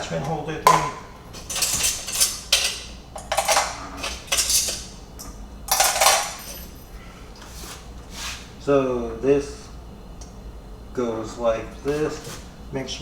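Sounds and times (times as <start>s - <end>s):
portafilter clinking against metal: 0.7s - 6.9s.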